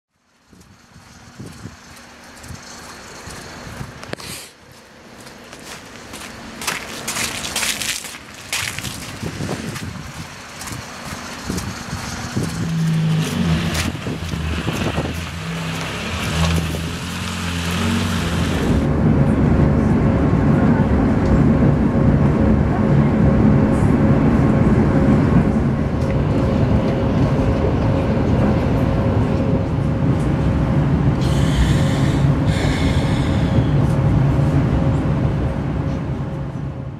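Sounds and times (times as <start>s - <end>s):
electric train motor hum: 0.2s - 7.3s, 9.1s - 20.5s, 21.1s - 36.9s
train clicks and knocks: 0.4s - 4.2s, 5.2s - 17.2s
brief hissing: 4.2s - 4.6s.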